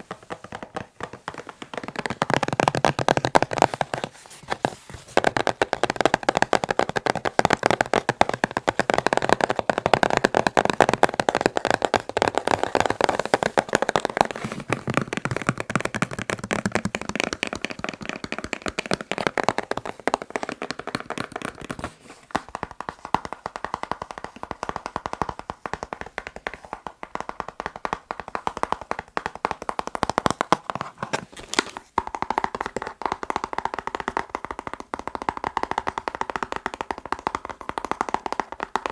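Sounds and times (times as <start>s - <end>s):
fingertip tapping on boxes: 0.0s - 31.2s.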